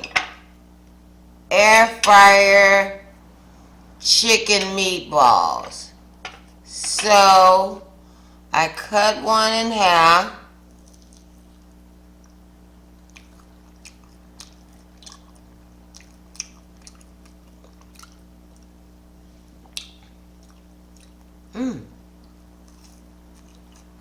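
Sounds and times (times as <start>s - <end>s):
low electrical hum: 0.0s - 24.0s
mouth chewing with wet clicks: 10.7s - 18.8s, 19.5s - 21.4s, 22.2s - 24.0s
voiced mm: 21.5s - 22.0s.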